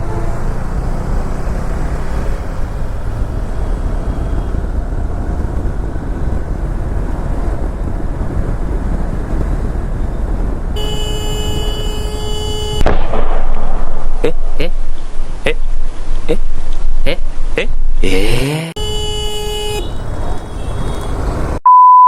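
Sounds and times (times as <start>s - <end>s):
motorcycle road noise: 0.0s - 12.8s, 14.2s - 21.6s
wind rumble: 1.2s - 18.0s
vehicle horn steady note: 10.8s - 12.8s, 18.8s - 20.0s.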